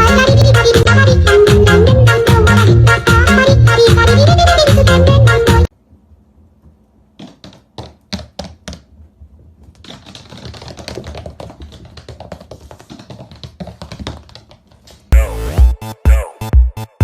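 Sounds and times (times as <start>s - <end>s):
music with heavy beat: 0.0s - 5.7s, 15.1s - 17.0s
sharp taps and clicks: 7.2s - 8.9s, 9.7s - 15.0s.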